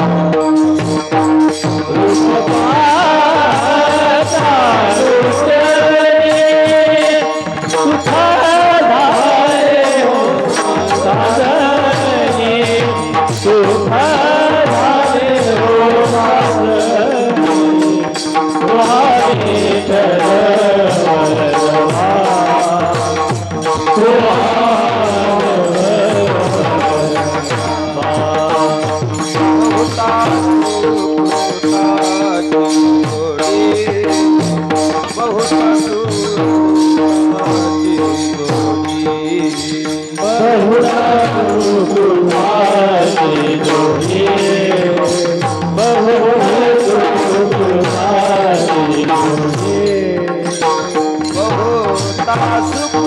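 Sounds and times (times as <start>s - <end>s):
devotional melody: 0.0s - 53.0s
drum beat: 0.0s - 53.0s
hand cymbals beating: 0.0s - 53.0s.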